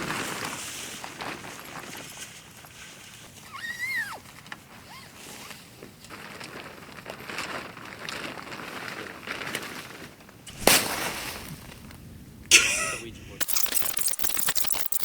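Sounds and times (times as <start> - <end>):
rustling: 0.0 - 12.1.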